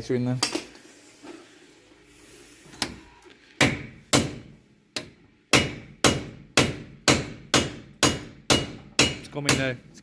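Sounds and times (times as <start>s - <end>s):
hammer striking metal: 3.6s - 9.8s.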